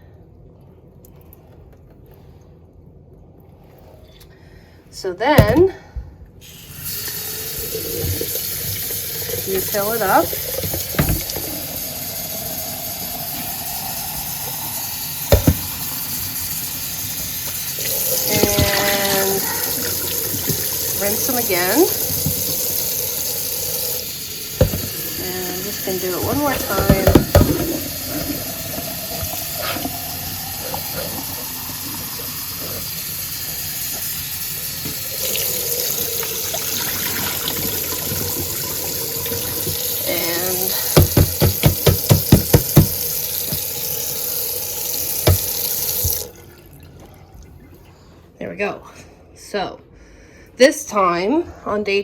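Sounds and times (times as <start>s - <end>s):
tap water running into a jar: 6.4s - 47.8s.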